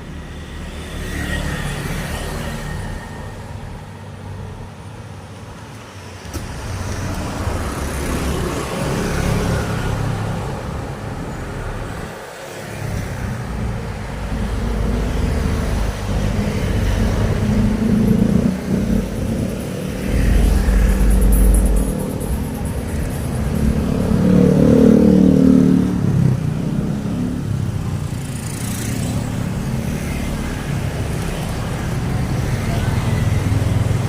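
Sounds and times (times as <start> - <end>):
vehicles passing on a street: 0.0 - 34.0.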